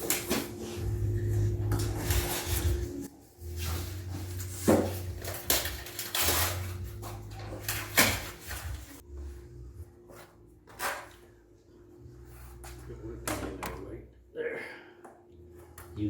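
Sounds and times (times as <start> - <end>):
vinyl planks rustling and scraping: 0.0 - 9.0.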